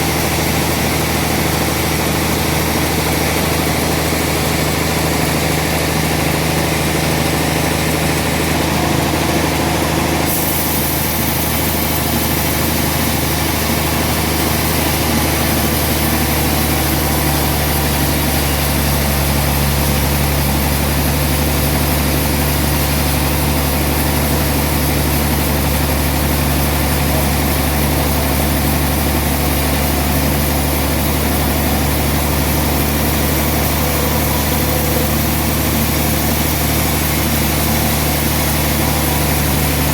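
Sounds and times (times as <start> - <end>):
engine hum: 0.0 - 39.9
saw hiss: 10.2 - 39.9.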